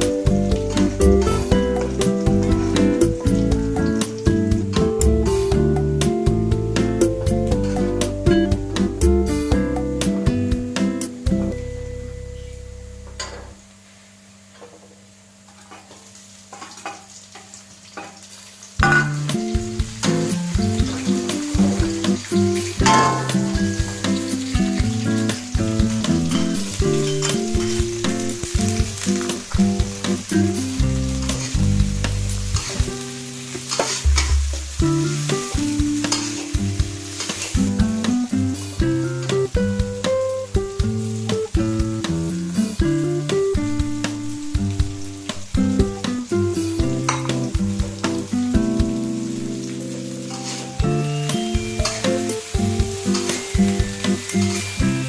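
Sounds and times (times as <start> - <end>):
guitar music: 0.0 - 13.5, 18.8 - 55.0
food sizzling in a frying pan: 0.0 - 55.0
spatula scraping a pan: 33.6 - 34.3, 50.3 - 50.8.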